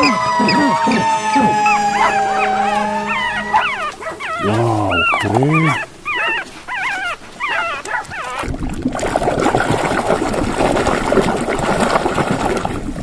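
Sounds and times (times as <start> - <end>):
high wavering whining cries: 0.0 - 8.0
water sloshing in a basin: 5.0 - 13.0.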